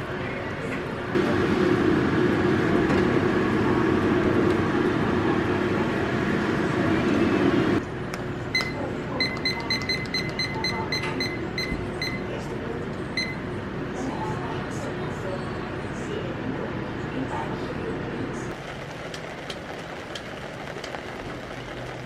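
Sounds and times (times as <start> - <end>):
machine humming: 18.5 - 22.0.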